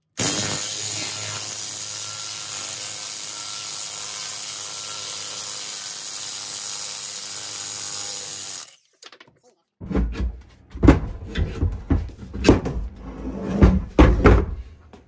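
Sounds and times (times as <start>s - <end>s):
power tool running: 0.0s - 8.9s.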